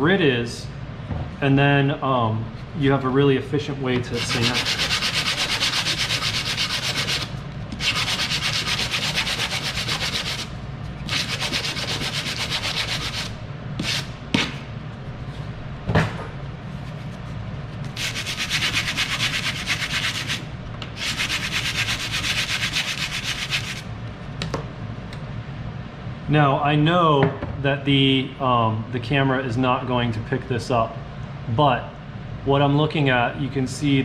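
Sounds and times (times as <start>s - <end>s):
sandpaper rubbing on metal: 4.2s - 10.5s, 11.1s - 14.1s, 18.0s - 20.4s, 21.0s - 23.8s.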